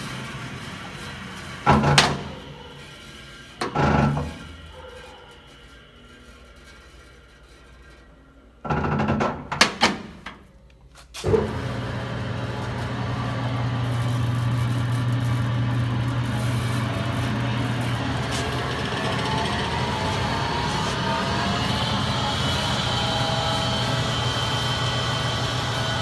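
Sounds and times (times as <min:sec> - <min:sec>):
clattering with sharp knocks: 0:08.6 - 0:10.5
band saw motor humming: 0:11.2 - 0:26.0.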